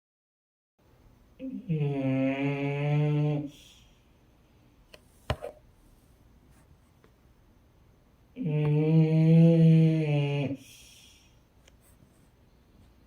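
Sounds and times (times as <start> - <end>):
woman snoring: 1.4 - 3.8, 8.4 - 11.2.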